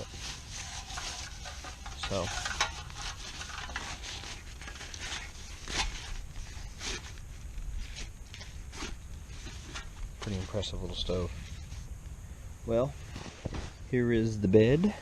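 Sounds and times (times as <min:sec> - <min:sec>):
scraping and rustling of gear: 0:00.0 - 0:11.9.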